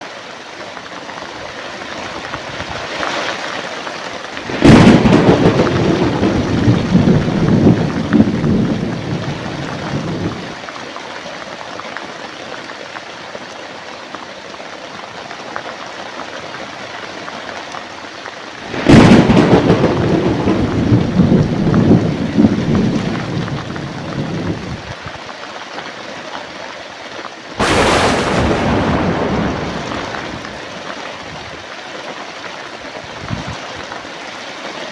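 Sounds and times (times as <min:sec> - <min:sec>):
heavy rain: 0:04.4 - 0:10.6, 0:18.6 - 0:24.9, 0:27.6 - 0:30.9
thunderclaps rumbling: 0:04.6 - 0:10.4, 0:18.8 - 0:24.7, 0:27.6 - 0:30.8.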